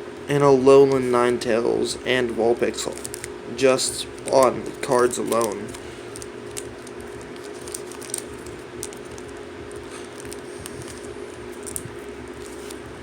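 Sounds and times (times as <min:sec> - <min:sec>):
steady background hum: 0:00.0 - 0:13.0
cards clicking and rustling: 0:02.8 - 0:03.3, 0:04.1 - 0:12.8.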